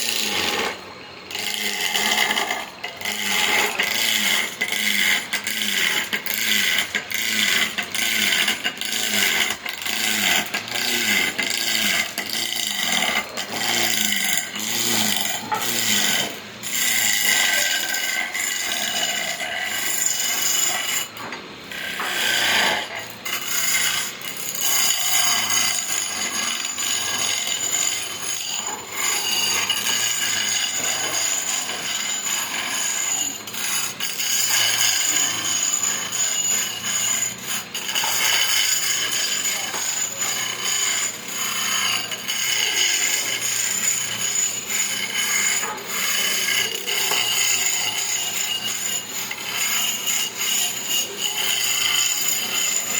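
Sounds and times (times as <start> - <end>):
saw cutting through wood: 0.0 - 52.9.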